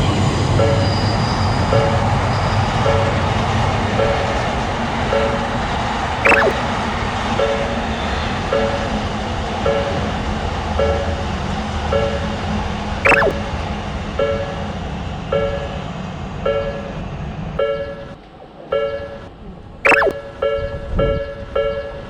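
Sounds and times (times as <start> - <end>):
railroad crossing warning bell: 2.8 - 4.5, 8.5 - 11.3, 14.2 - 19.3, 20.1 - 22.0.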